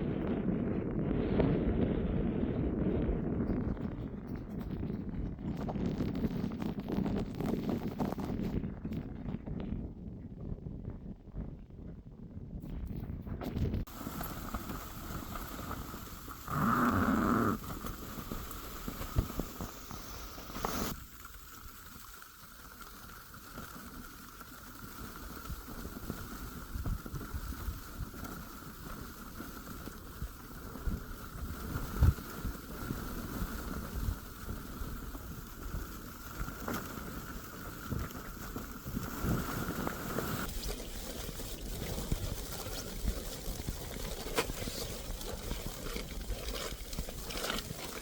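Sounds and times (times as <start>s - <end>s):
steady patter: 13.0s - 48.0s
blizzard wind gusting: 13.4s - 21.4s, 25.2s - 40.9s.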